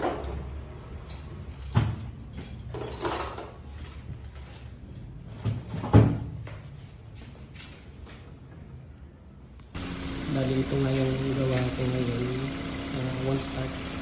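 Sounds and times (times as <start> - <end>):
steady low hum: 9.7 - 14.0.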